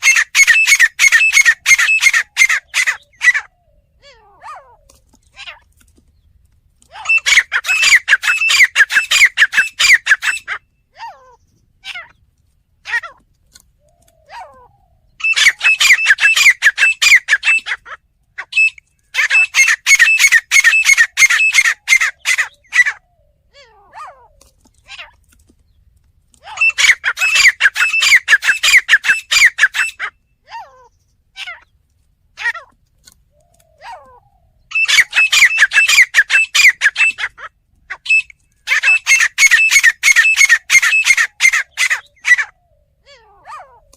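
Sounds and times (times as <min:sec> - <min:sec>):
francolin calling: 0:00.0 - 0:05.0, 0:07.0 - 0:10.7, 0:13.8 - 0:17.8, 0:18.4 - 0:23.5, 0:26.4 - 0:30.2, 0:33.3 - 0:43.9.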